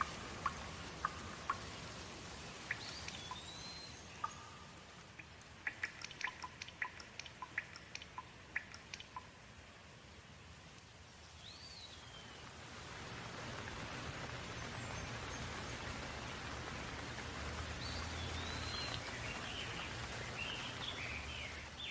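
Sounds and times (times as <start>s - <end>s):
steady rain falling: 0.0s - 21.9s
bird chirping: 2.4s - 9.3s, 17.8s - 21.9s.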